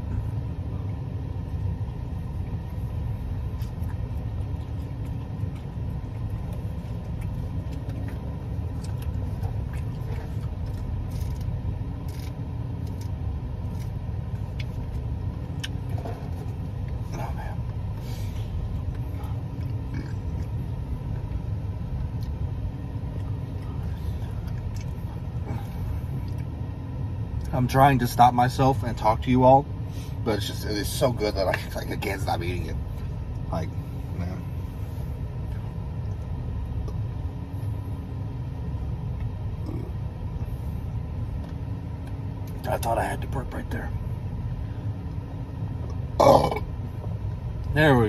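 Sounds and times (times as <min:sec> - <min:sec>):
steady low rumble: 0:00.0 - 0:48.0
person chewing: 0:03.2 - 0:26.5.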